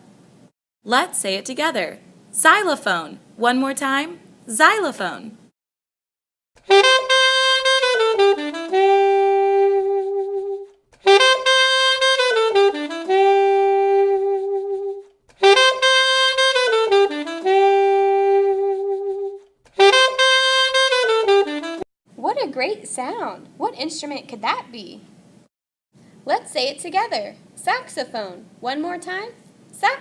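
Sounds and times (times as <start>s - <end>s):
saxophone phrase: 6.7s - 21.8s.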